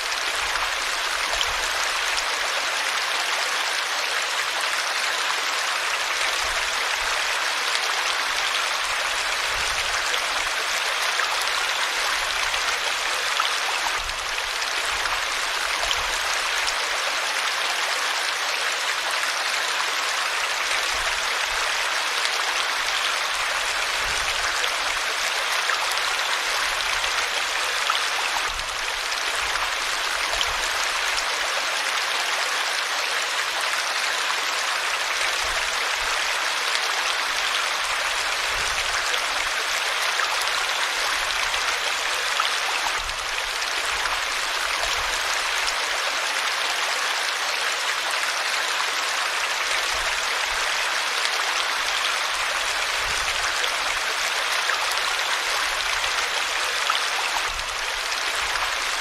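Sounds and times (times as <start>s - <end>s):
river flowing over rocks: 0.0s - 59.0s.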